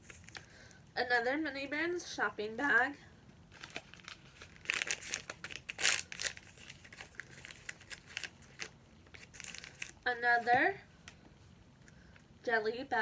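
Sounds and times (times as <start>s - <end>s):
plastic wrapping crinkling: 0.0s - 0.7s, 3.5s - 10.6s.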